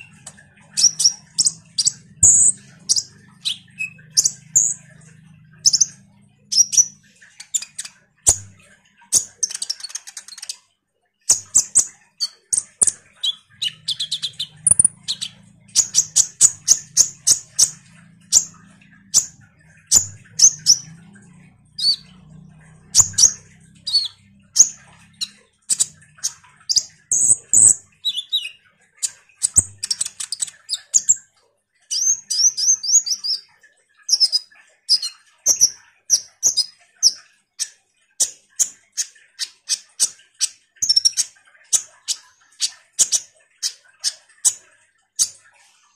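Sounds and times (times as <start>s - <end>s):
bird chirping: 0.0s - 10.7s, 11.3s - 45.5s
bird twittering trills: 0.0s - 10.7s, 11.3s - 45.5s
faint low hum: 11.3s - 31.2s.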